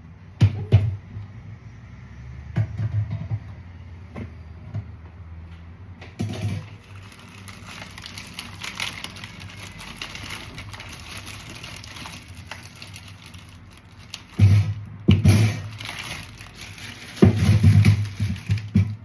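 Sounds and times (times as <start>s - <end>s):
plastic bags crinkling: 6.5s - 19.0s.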